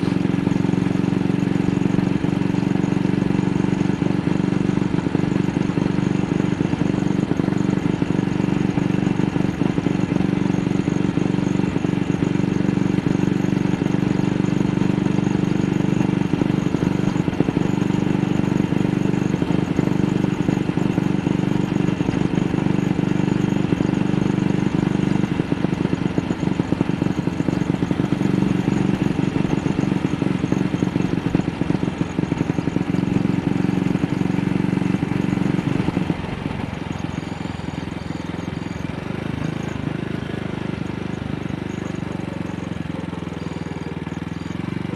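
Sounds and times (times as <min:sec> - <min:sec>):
motorcycle engine misfiring: 0:00.0 - 0:44.9.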